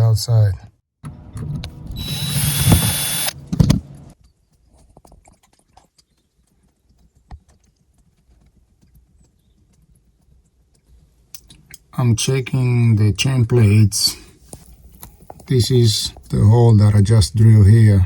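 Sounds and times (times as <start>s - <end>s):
power drill running: 1.9s - 3.4s.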